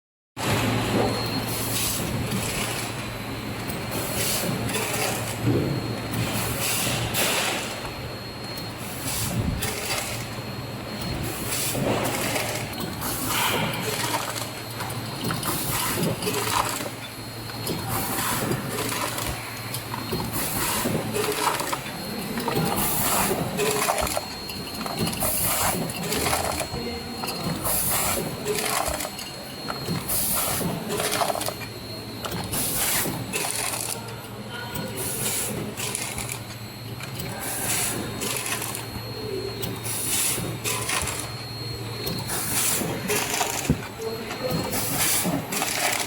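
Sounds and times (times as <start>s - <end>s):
packing machine hum and whine: 0.4s - 46.0s
machine strokes: 8.5s - 34.0s.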